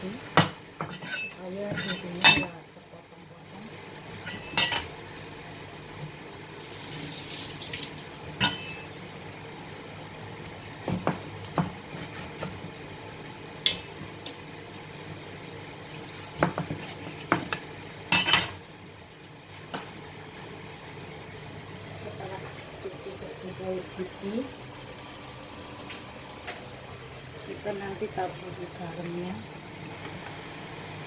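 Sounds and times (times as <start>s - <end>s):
dishes and utensils clinking: 0.4s - 2.5s, 4.2s - 4.9s, 8.4s - 8.9s, 18.1s - 18.6s.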